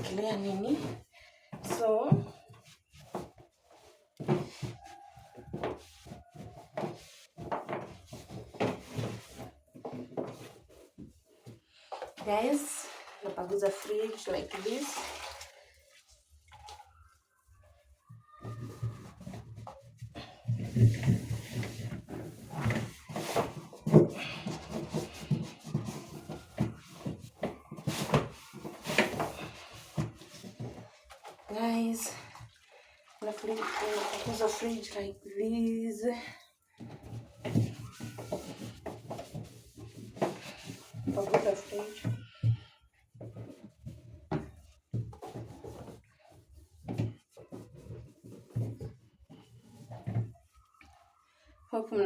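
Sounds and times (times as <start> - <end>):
cloth scrubbing refrigerator: 0.0 - 42.4
refrigerator parts knocking and clattering: 4.2 - 11.2.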